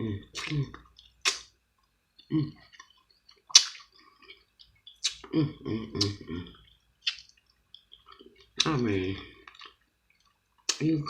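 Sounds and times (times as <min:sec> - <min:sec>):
wet eating smacks: 0:00.4 - 0:01.5, 0:02.6 - 0:05.3, 0:05.9 - 0:08.8
person murmuring mm: 0:02.2 - 0:02.7, 0:05.2 - 0:06.6.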